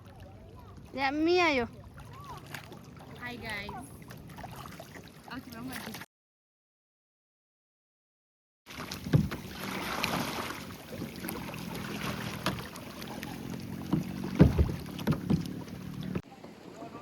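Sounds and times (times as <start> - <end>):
paddle water splashing: 0.0 - 6.1, 8.7 - 17.0
paddles knocking on hull: 8.8 - 16.6.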